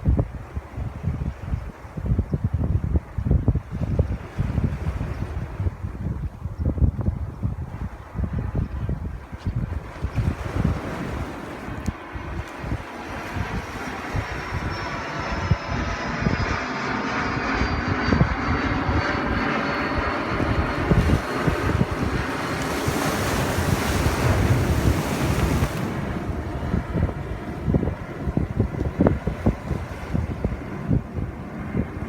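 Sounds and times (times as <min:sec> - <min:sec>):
wind buffeting microphone: 0:00.0 - 0:32.0
wave washing in: 0:09.7 - 0:15.0, 0:19.9 - 0:31.5
ocean surf: 0:10.3 - 0:14.2, 0:20.9 - 0:27.4
passing engine drone: 0:10.4 - 0:32.0
faint falling whine: 0:11.8 - 0:24.4.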